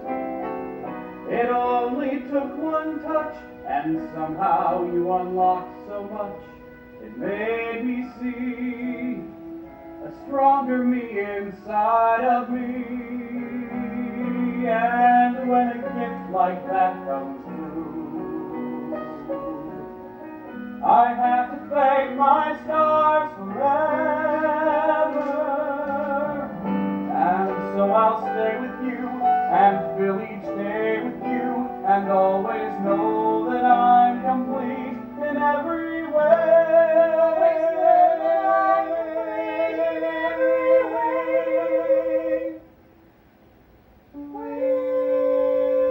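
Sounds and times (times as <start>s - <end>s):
instrumental accompaniment: 0.0s - 42.6s
man and woman singing duet: 10.0s - 20.0s, 20.8s - 42.6s, 44.2s - 45.9s.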